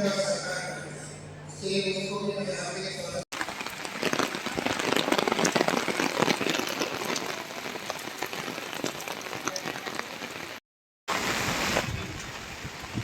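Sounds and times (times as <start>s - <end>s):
heavy rain falling: 3.3s - 13.0s.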